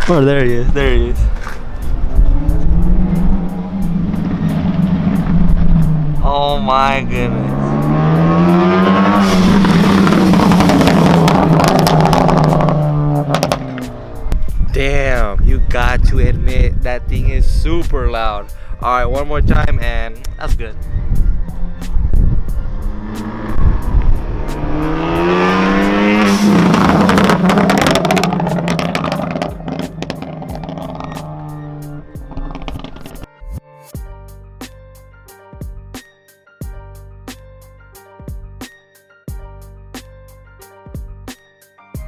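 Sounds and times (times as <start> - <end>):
loud car exhaust driving past: 1.8 - 14.4, 21.2 - 33.3
exhaust crackles and pops: 9.2 - 14.1, 25.8 - 33.3.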